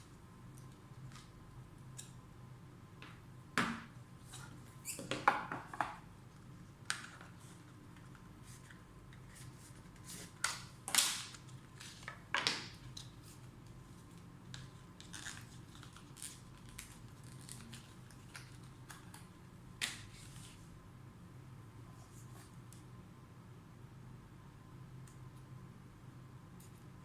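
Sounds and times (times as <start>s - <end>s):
packaging crinkling and tearing: 15.0s - 19.1s.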